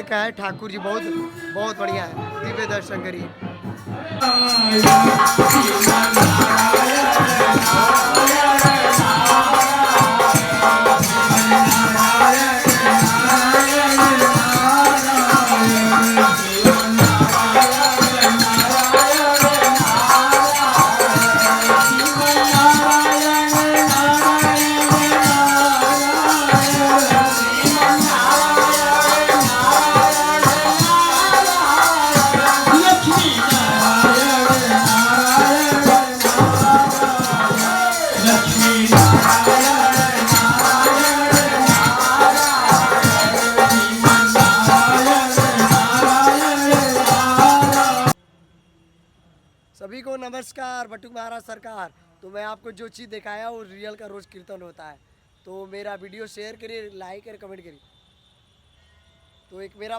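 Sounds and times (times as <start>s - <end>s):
devotional chanting with music: 0.0s - 48.2s
jingling hand percussion: 4.2s - 48.2s.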